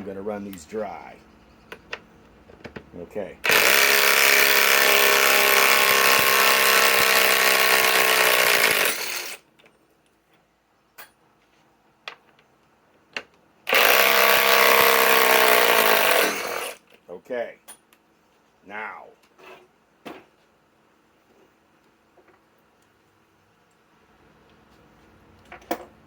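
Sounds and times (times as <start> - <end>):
cordless drill running: 3.4 - 9.4, 13.7 - 16.8.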